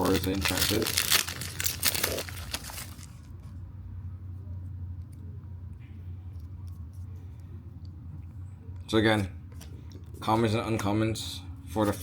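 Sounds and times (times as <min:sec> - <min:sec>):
card pack wrapper crinkling: 0:00.0 - 0:03.3
low steady hum: 0:00.0 - 0:12.0.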